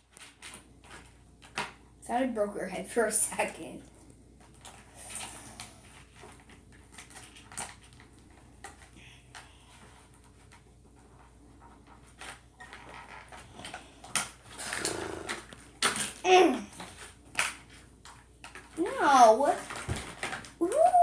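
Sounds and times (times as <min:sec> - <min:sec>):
plastic packaging rustling: 0:04.4 - 0:20.6.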